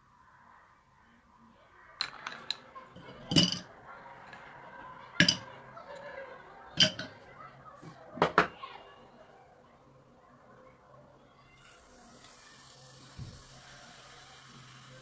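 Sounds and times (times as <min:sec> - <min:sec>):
glass clinking: 0:03.0 - 0:03.7, 0:05.2 - 0:05.5, 0:06.8 - 0:07.2.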